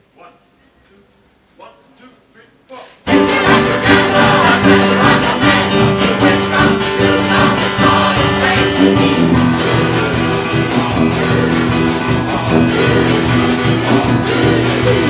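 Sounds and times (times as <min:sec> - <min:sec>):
band playing: 0:03.1 - 0:15.0
choir singing: 0:03.1 - 0:15.0
fast percussion beat: 0:03.1 - 0:15.0.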